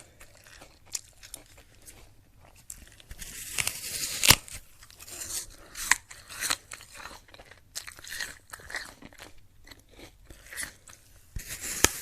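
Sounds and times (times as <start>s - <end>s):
apple crunching while chewed: 0.0s - 12.0s.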